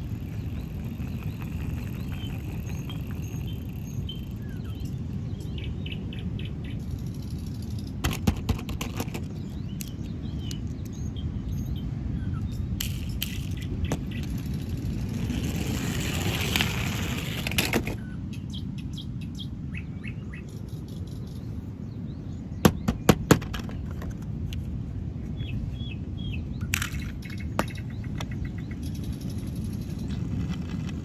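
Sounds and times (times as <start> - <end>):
steady low rumble: 0.0 - 8.1.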